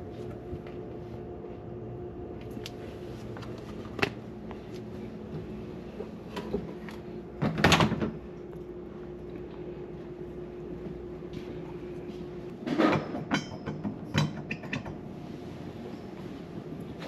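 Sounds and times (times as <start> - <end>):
steady refrigerator hum: 0.0 - 17.0
refrigerator parts clattering: 12.6 - 14.9.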